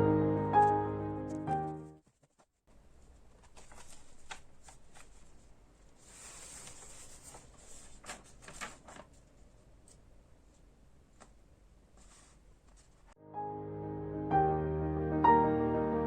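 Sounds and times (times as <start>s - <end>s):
soft paper rustle: 1.4s - 13.2s.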